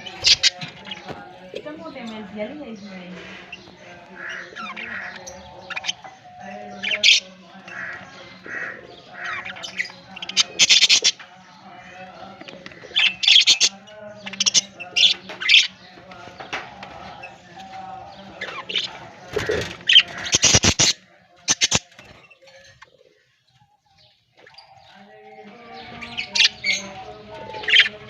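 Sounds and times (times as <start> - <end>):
budgerigar chicks squawking: 0.0 - 1.2, 2.8 - 15.9, 18.3 - 23.2, 25.8 - 28.0.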